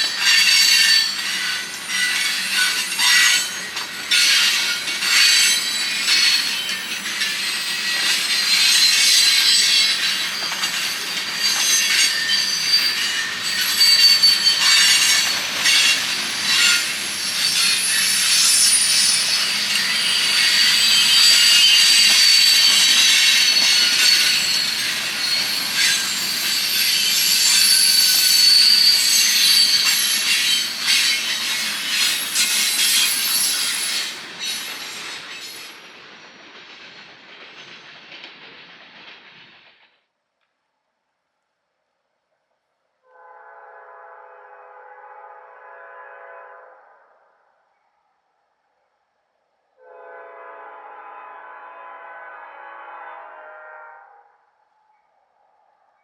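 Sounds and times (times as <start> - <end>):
train cars rolling past: 0.0 - 40.0
high-pitched wheel squeal: 11.4 - 31.3.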